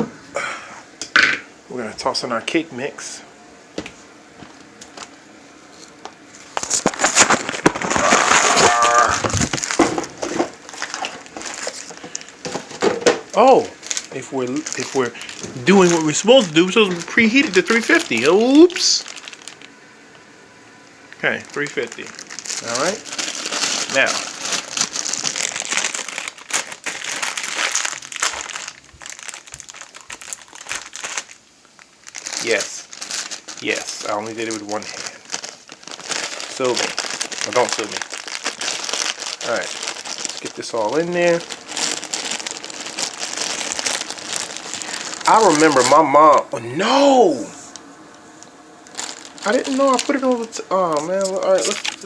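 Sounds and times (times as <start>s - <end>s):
plastic bag crinkling and tearing: 4.8s - 19.8s, 21.2s - 52.0s.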